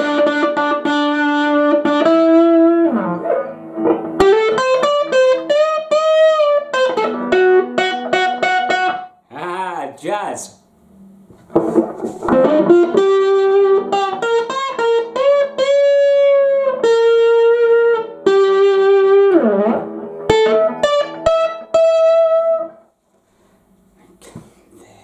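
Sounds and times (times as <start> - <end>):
electric guitar melody: 0.0 - 9.1, 12.2 - 22.8.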